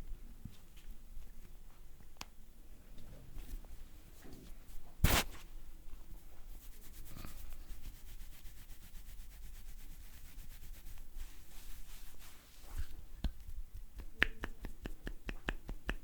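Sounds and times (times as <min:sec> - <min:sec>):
hands rubbing briskly: 0:05.0 - 0:05.4, 0:06.6 - 0:16.0.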